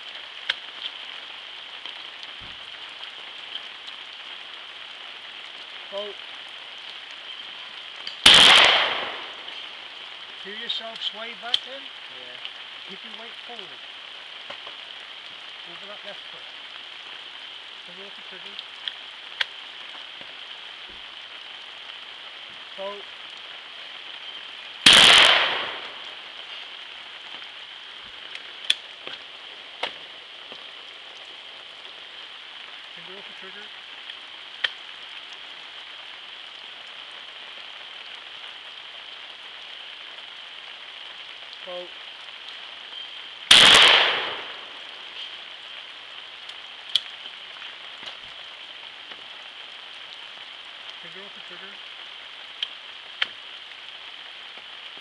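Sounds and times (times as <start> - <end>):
faint sharp clicks: 0.4 - 1.0, 18.8 - 19.6, 34.0 - 34.8, 52.6 - 53.4
shotgun shot: 8.3 - 9.3, 24.9 - 26.0, 43.5 - 44.6.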